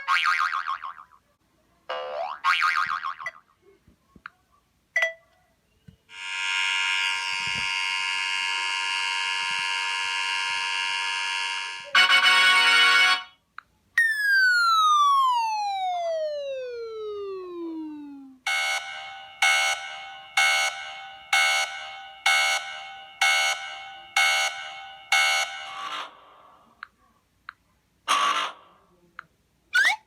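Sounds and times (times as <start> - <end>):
harsh electronic buzzing tone: 6.1 - 12.0, 18.5 - 26.1
long falling whistle: 14.0 - 19.2
chime-like alarm tones: 14.0 - 26.3.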